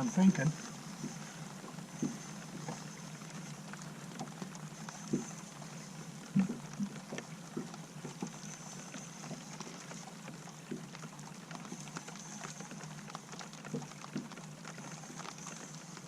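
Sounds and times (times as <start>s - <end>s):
low hum: 0.0s - 16.0s
water lapping against boat: 0.0s - 16.0s
small irregular knocks: 0.9s - 5.6s, 6.3s - 8.7s.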